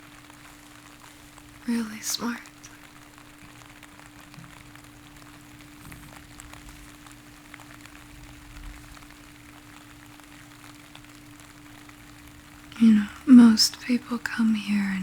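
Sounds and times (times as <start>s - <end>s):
faint low hum: 0.0s - 15.0s
steady rain hiss: 0.0s - 15.0s.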